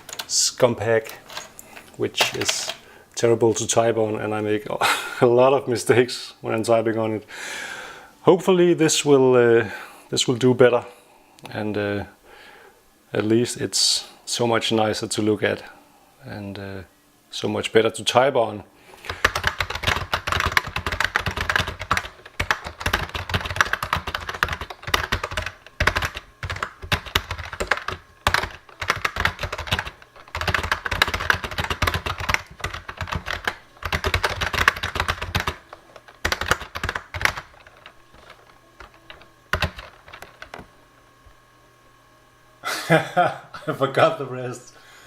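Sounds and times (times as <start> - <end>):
keyboard typing clacks: 0.0 - 0.3, 19.1 - 40.7.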